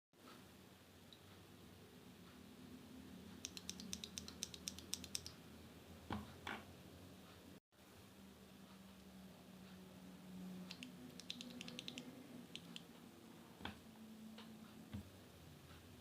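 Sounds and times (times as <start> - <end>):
mechanical keyboard typing: 3.4 - 5.4, 10.7 - 12.8.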